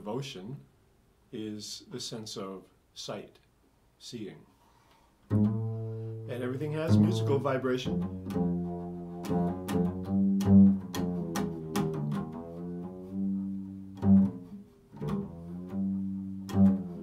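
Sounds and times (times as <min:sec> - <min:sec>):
string instrument single notes: 0:05.3 - 0:17.0.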